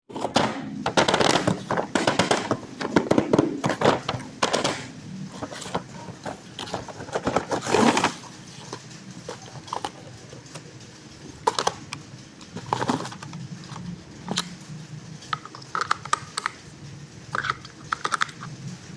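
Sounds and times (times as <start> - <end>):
packaging crackly rustling: 5.3 - 10.7.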